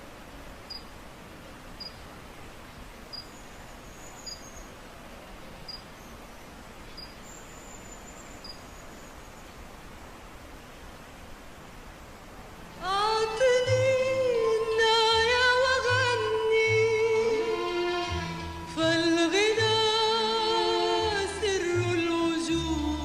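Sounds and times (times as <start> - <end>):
faint hiss: 0.0 - 23.0
woman singing: 12.8 - 23.0
low bass accompaniment: 15.2 - 23.0.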